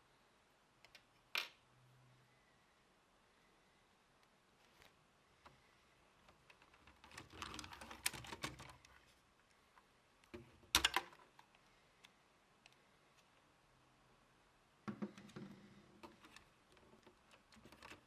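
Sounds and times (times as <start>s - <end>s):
plastic toy bricks clicking: 10.7s - 11.2s.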